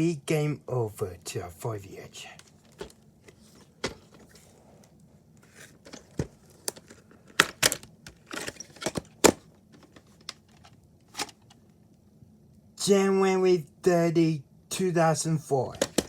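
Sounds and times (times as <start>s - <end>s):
packaging rustling: 2.4s - 11.5s
plastic clicks and knocks: 15.8s - 16.0s.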